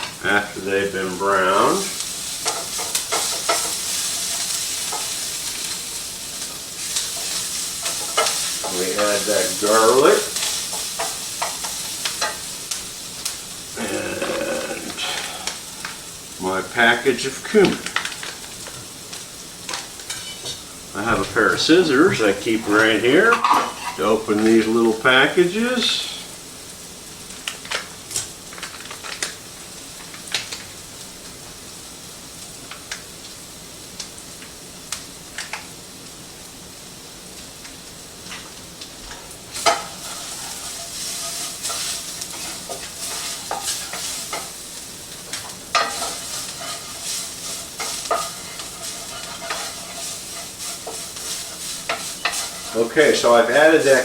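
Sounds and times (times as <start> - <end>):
vegetables sizzling in a pan: 0.0 - 54.0
utensil stirring clicks and scrapes: 2.4 - 5.2, 6.8 - 9.4, 39.6 - 44.6, 45.2 - 53.2.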